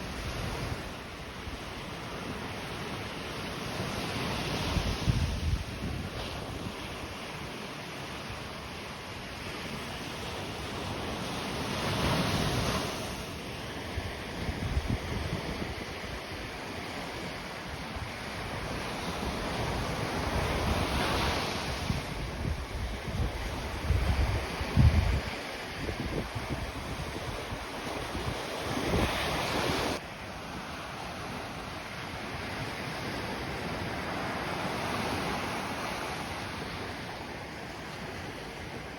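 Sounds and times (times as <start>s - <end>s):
waves breaking on sandy beach: 0.0s - 38.9s
wind buffeting microphone: 4.5s - 7.0s, 13.9s - 30.0s.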